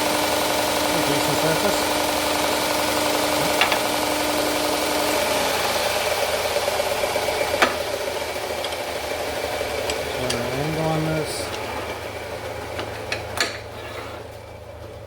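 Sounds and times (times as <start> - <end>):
belt grinder running: 0.0 - 14.8.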